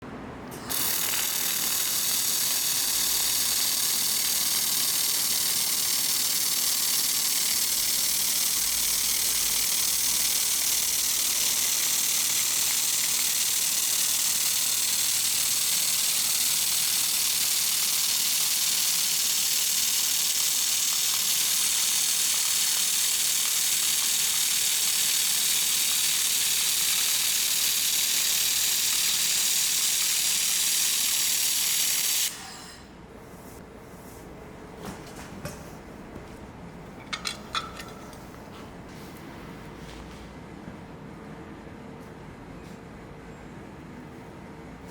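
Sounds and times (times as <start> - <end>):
laser welding machine hissing: 0.5 - 32.8.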